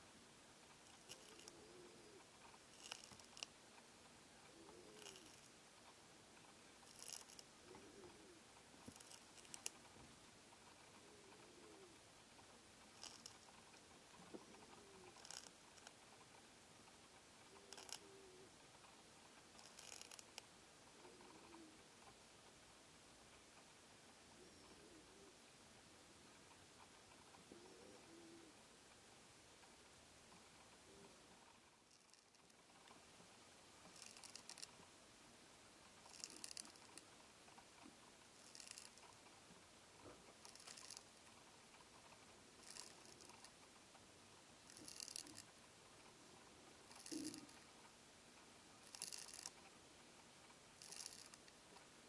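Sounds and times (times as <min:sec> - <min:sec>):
snail rasping on a leaf: 0:00.8 - 0:01.7, 0:02.4 - 0:03.6, 0:04.9 - 0:05.5, 0:06.8 - 0:07.5, 0:08.8 - 0:09.8, 0:12.9 - 0:13.6, 0:14.5 - 0:16.0, 0:17.6 - 0:18.1, 0:19.5 - 0:20.4, 0:31.8 - 0:32.6, 0:33.8 - 0:34.7, 0:36.0 - 0:37.1, 0:38.3 - 0:39.3, 0:40.3 - 0:41.1, 0:42.2 - 0:43.6, 0:44.7 - 0:45.5, 0:46.8 - 0:47.6, 0:48.8 - 0:49.7, 0:50.8 - 0:51.6.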